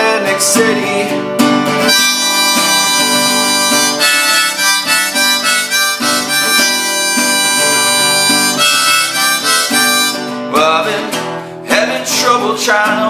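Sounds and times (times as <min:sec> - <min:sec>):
strummed acoustic guitar: 0:00.0 - 0:13.0
harmonica playing chords: 0:01.8 - 0:10.6.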